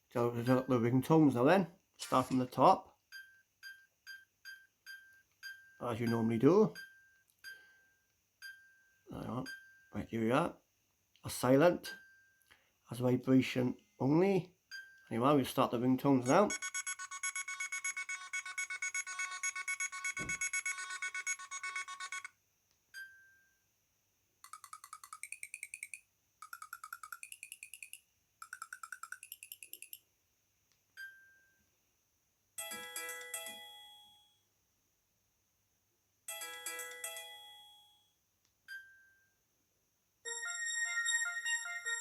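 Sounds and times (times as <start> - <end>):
phone ringtones through small speaker: 16.2 - 22.3, 40.3 - 42.0.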